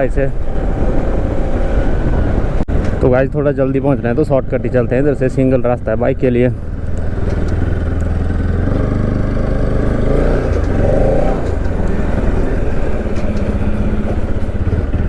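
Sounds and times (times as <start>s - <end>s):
wind noise: 0.0s - 8.2s
road noise: 0.0s - 15.0s
motorcycle engine running: 3.8s - 15.0s.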